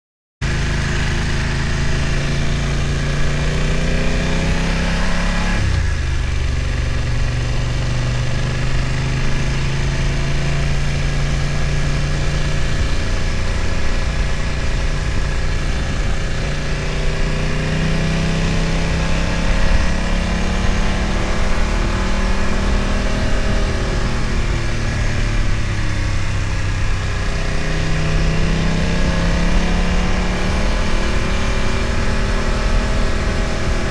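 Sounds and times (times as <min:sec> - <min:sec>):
motorcycle engine: 0:00.4 - 0:33.9
wind and road noise: 0:00.5 - 0:33.9.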